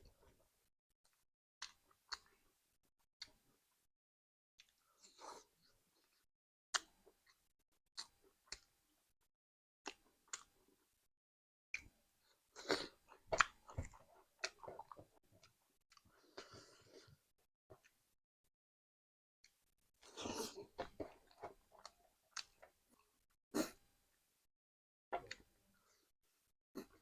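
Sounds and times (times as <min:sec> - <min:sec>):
person chewing: 0:12.6 - 0:17.1, 0:20.0 - 0:22.8.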